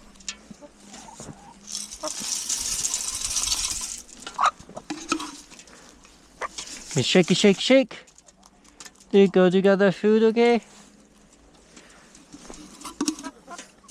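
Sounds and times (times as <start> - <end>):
chicken feed pouring into bowl: 1.7 - 4.5.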